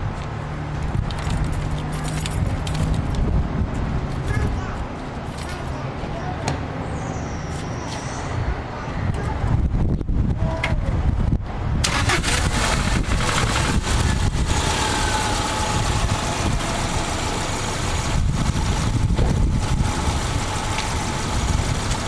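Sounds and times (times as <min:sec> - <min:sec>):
car engine idling: 0:11.8 - 0:22.0.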